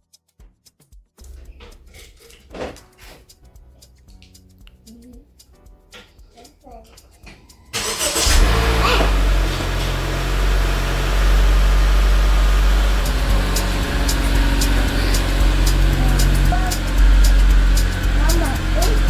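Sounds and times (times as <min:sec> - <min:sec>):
car engine rumbling: 0:06.8 - 0:19.0.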